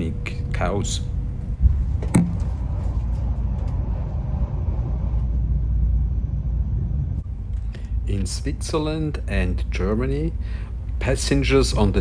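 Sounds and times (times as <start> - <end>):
train running gear rumble: 0.0 - 12.0.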